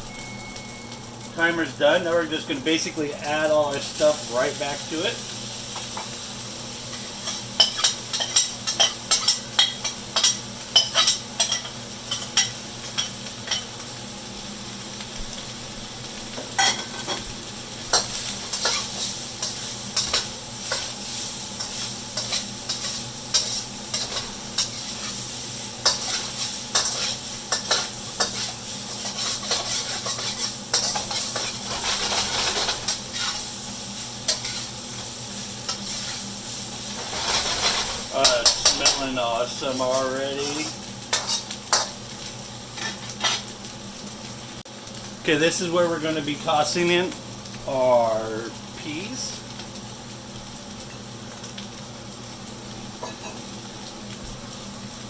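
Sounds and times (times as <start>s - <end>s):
rice sizzling in hot oil: 0.0s - 55.0s
utensil scraping a pan: 25.8s - 33.4s, 37.0s - 41.9s.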